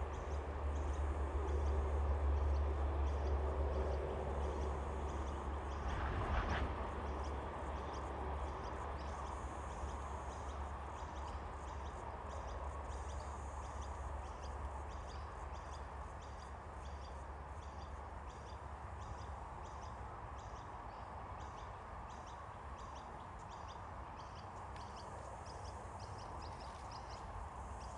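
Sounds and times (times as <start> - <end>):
wind rumble on microphone: 0.0 - 12.1.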